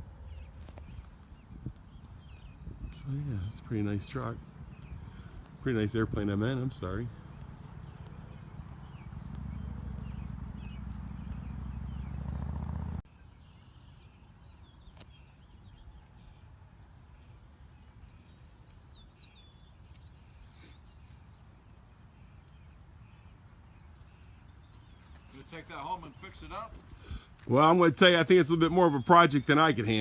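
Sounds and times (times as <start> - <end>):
bird chirps: 6.5 - 27.2.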